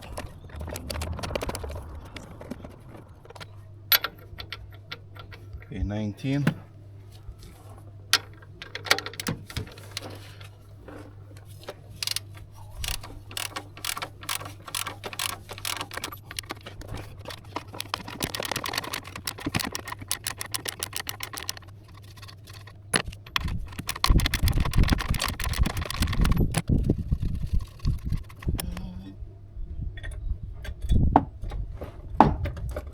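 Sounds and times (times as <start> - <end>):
heavy knocks and rumbling: 0.0 - 5.8
metal tools clinking: 12.0 - 26.6
ratchet wrench clicking: 12.0 - 28.6.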